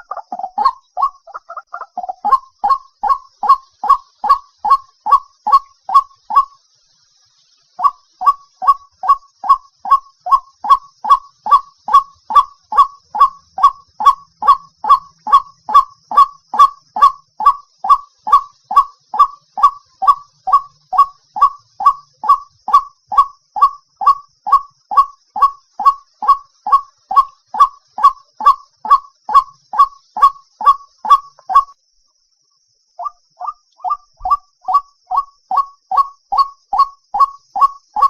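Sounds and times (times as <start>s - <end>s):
waterhen harsh kwak calls: 0.0s - 6.5s, 33.0s - 38.0s
faint high hiss: 1.8s - 38.0s.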